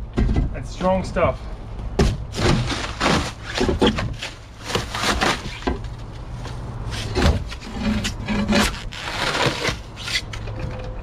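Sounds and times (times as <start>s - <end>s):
foam cracking and tearing: 2.4s - 5.9s, 8.5s - 10.3s.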